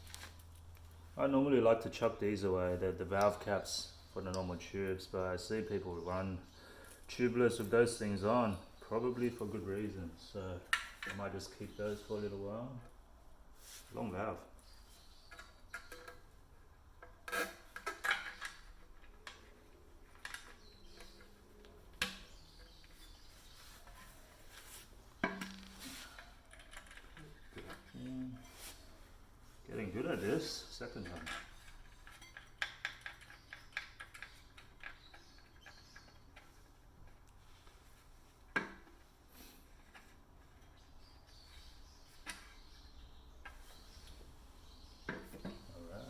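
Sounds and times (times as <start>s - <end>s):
small metal clicks and taps: 31.0s - 37.4s.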